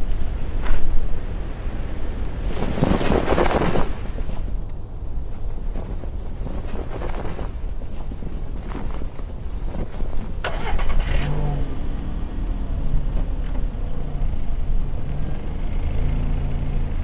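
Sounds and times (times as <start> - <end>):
wind rumbling: 0.0 - 16.0
car engine cranking and idling: 10.0 - 17.0.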